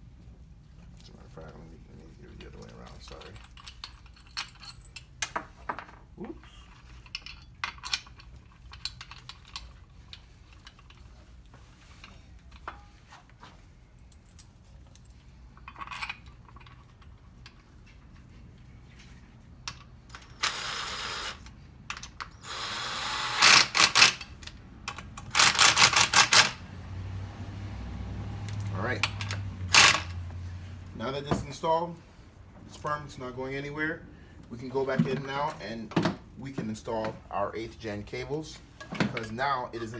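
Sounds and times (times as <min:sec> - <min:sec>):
bolts and tools clinking: 0:02.3 - 0:13.4, 0:14.1 - 0:26.7, 0:28.3 - 0:30.2, 0:34.6 - 0:39.9
rapid ratchet clicking: 0:22.4 - 0:26.6, 0:29.7 - 0:30.1.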